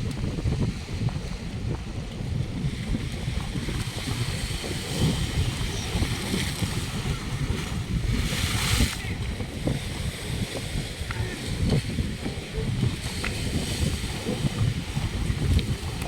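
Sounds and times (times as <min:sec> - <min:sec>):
wind buffeting microphone: 0:00.0 - 0:16.0
sea waves: 0:02.5 - 0:16.0.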